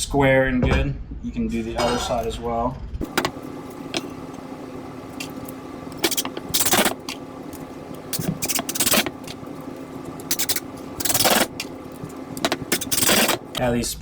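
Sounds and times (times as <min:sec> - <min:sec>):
handling clicks and knocks: 0:03.0 - 0:13.6
power driver driving screws: 0:03.0 - 0:13.6
steady low hum: 0:03.0 - 0:14.0.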